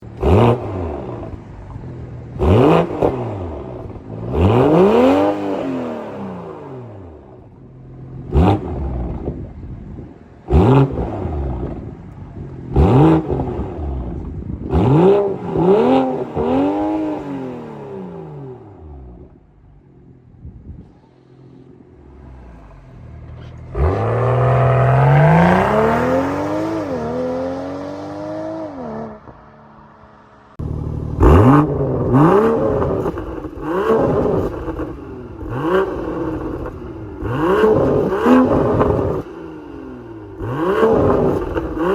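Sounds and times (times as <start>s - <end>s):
car engine revving: 0.0s - 41.9s
car accelerating through gears: 22.1s - 41.9s.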